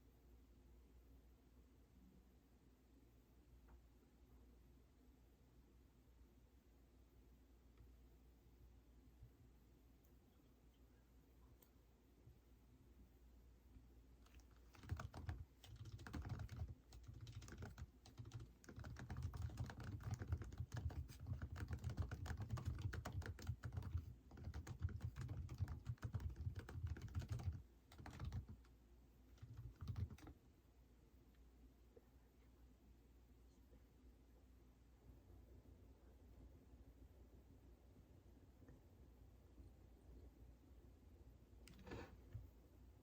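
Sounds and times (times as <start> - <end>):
computer keyboard typing: 14.2 - 28.7, 29.3 - 30.4.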